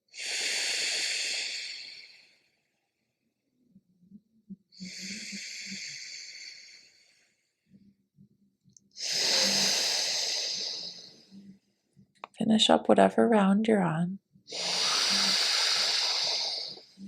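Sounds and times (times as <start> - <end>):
breathing through nostril: 0.1 - 2.4, 4.8 - 7.3, 8.9 - 11.3, 14.5 - 17.0.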